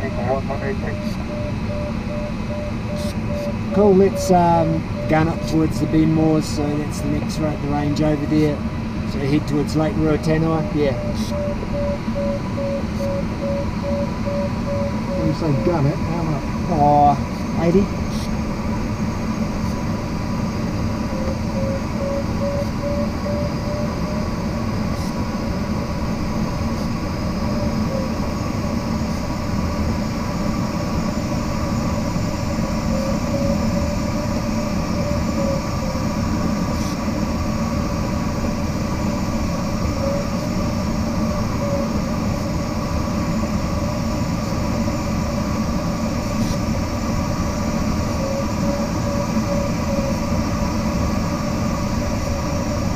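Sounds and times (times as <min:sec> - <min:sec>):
faint wavering tone: 0:00.0 - 0:06.2, 0:10.5 - 0:15.9, 0:21.0 - 0:24.3.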